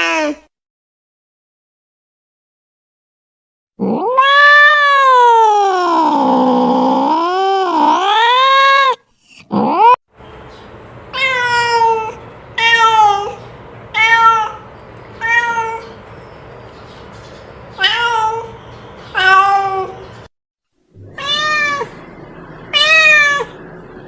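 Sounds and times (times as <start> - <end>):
cat yowling and meowing: 0.0 - 0.4, 3.8 - 10.0, 11.1 - 16.0, 17.8 - 20.0, 21.0 - 22.0, 22.7 - 23.6.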